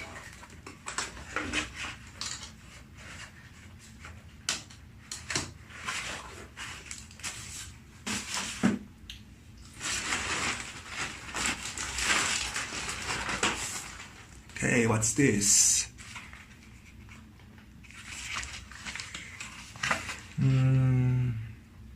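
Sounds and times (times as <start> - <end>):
packaging crinkling and rustling: 0.0 - 3.4, 5.1 - 8.8, 9.6 - 15.1, 15.9 - 20.4.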